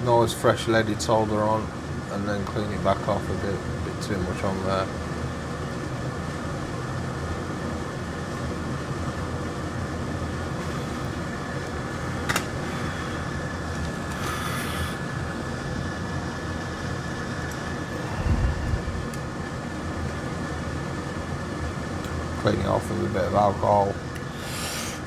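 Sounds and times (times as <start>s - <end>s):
fan hum: 0.0s - 25.0s
thin high whine: 7.3s - 25.0s.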